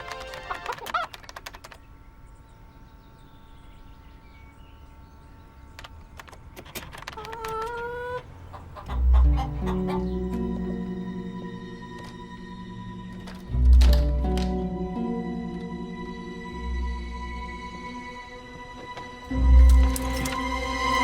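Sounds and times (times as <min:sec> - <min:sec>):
hen clucking: 0:00.0 - 0:01.6, 0:06.5 - 0:11.1.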